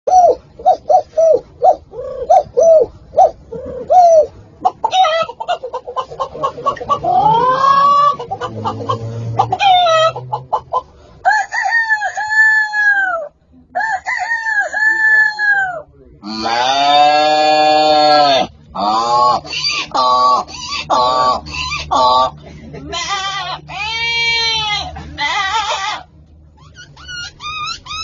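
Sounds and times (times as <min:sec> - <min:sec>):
chicken squawking: 0:00.1 - 0:28.0
chicken clucking: 0:03.6 - 0:11.0
rooster crowing: 0:11.2 - 0:15.8.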